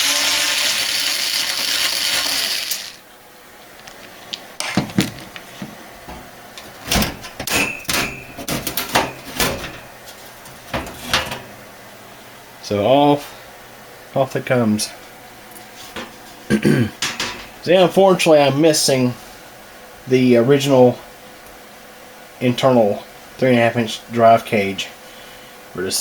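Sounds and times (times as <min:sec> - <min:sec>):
power screwdriver running: 0:00.0 - 0:03.0.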